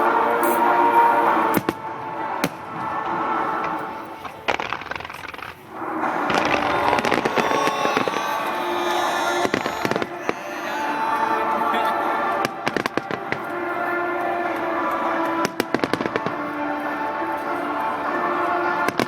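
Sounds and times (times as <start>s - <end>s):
steady background din: 0.0s - 19.0s
fireworks bursting: 1.5s - 10.4s, 12.4s - 13.6s, 15.2s - 16.4s
crackling reports: 2.4s - 16.7s.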